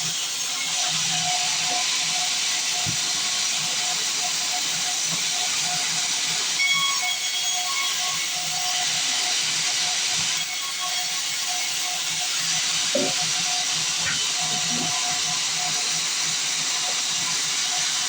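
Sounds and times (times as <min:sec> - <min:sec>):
band saw cutting log: 0:09.0 - 0:18.0.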